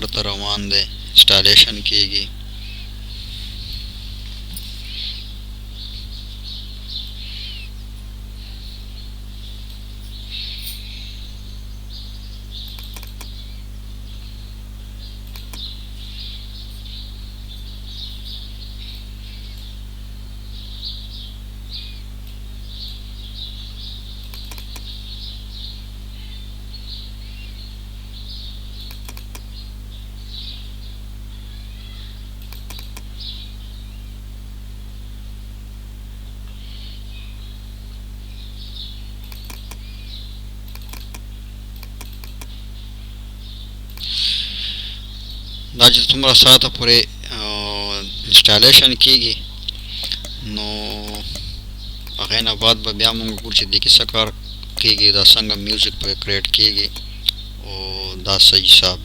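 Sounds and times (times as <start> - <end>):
low electrical hum: 0.0 - 59.0
small birds chirping: 0.0 - 59.0
sharp clicks: 12.6 - 13.4, 15.2 - 15.7, 24.2 - 25.0, 28.8 - 29.5, 32.4 - 33.1, 39.2 - 39.9, 40.6 - 42.6, 43.8 - 44.2, 48.2 - 57.5.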